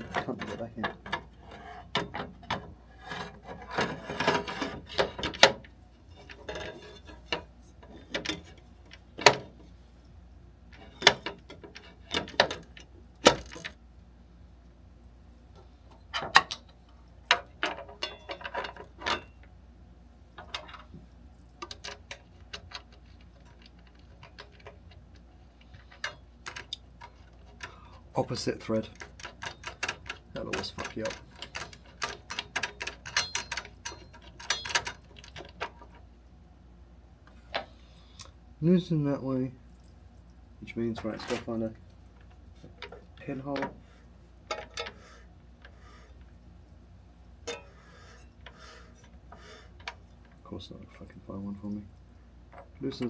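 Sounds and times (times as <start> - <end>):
metal tools clicking and clinking: 17.3 - 19.5, 25.8 - 35.7, 44.4 - 45.0, 47.4 - 48.5.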